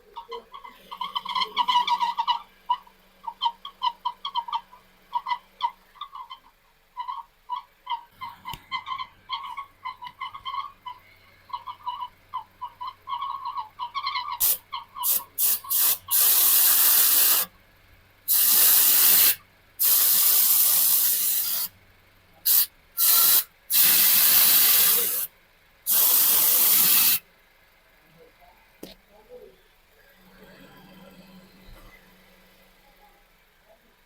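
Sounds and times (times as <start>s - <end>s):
aerosol spray hissing: 14.4s - 17.5s, 18.3s - 21.7s, 22.4s - 25.3s, 25.9s - 27.2s.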